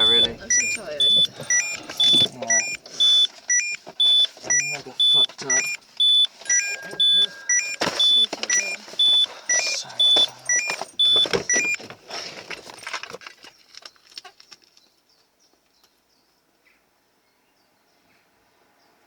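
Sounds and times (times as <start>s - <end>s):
short electronic beeps: 0.0s - 11.8s.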